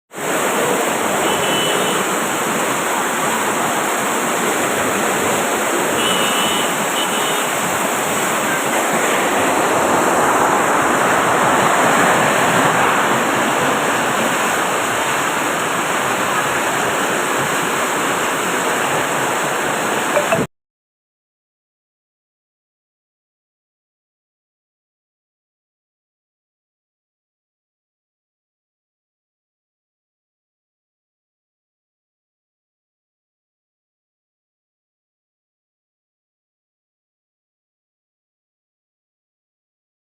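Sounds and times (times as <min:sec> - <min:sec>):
heavy rain pouring: 0:00.2 - 0:20.5.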